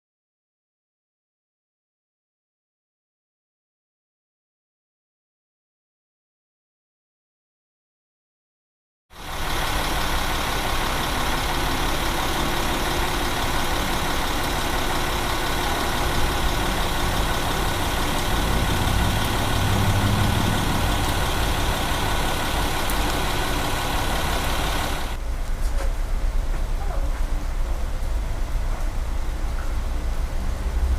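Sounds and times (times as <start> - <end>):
rain hissing on wet road: 9.2 - 30.9
vehicle engine rumble: 9.2 - 30.9.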